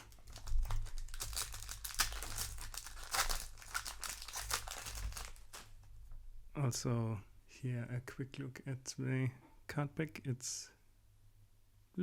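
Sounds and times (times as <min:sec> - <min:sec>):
foil wrapper tearing: 0:00.0 - 0:05.7
foil wrapper crinkling: 0:00.0 - 0:05.8.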